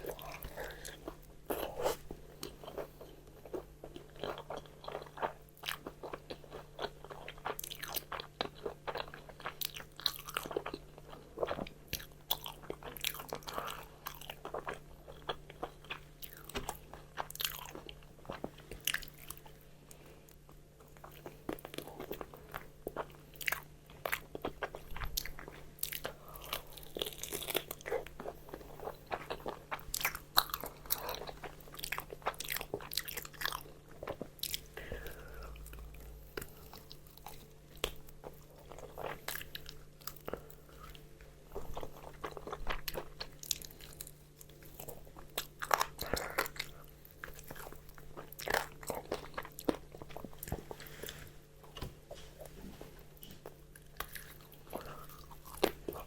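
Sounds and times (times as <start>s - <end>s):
person chewing crispy chicken: 0.0s - 19.6s, 20.2s - 51.9s, 53.2s - 56.0s.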